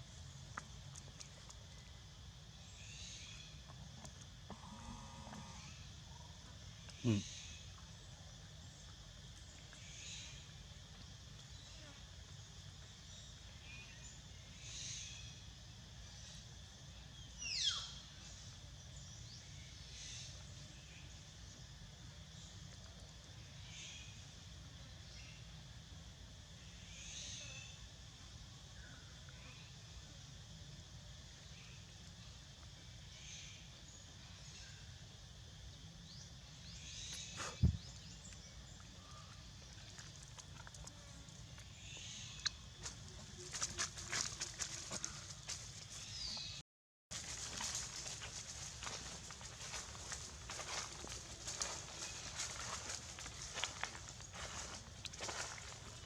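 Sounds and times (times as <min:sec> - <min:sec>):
faint bird or insect chirping: 0:00.0 - 0:56.0
loud low thump: 0:37.6 - 0:37.9.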